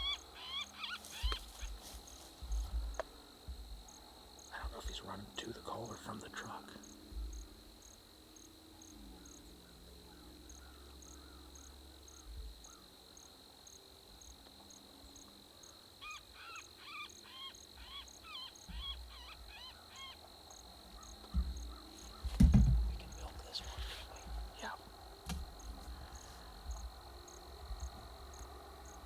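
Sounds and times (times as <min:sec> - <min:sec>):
insects trilling: 0:00.0 - 0:29.0.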